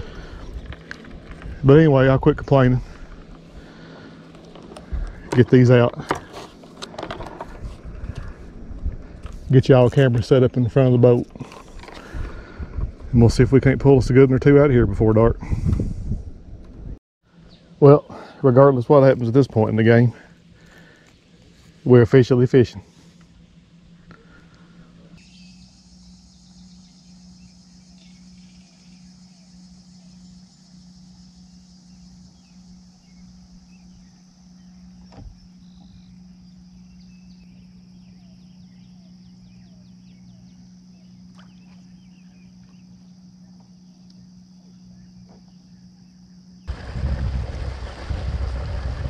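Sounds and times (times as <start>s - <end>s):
low hum: 0.0s - 49.0s
rush of wind-like noise: 46.7s - 49.0s.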